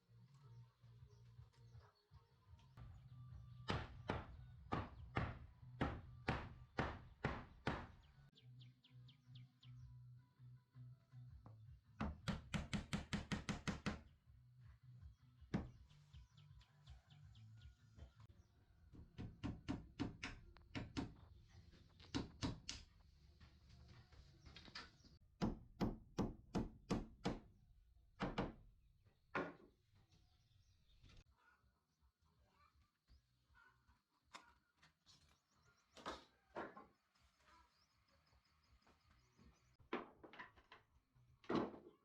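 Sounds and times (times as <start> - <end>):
hammer striking wood: 3.7 - 8.1, 12.0 - 14.0, 19.0 - 21.2, 25.4 - 27.5, 28.2 - 28.6.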